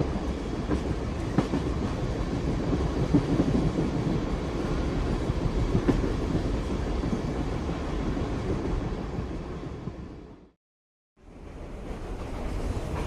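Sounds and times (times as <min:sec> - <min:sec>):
train wheels rumbling on rails: 0:00.0 - 0:10.6, 0:11.2 - 0:13.0.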